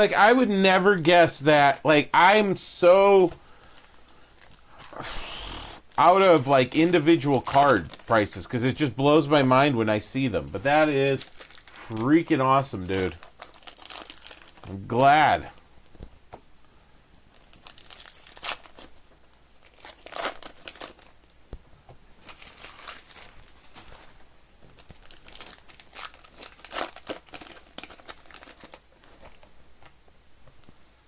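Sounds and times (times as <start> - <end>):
wrappers crinkling and tearing: 5.8 - 8.6, 10.0 - 15.6, 17.3 - 21.4, 22.2 - 30.0.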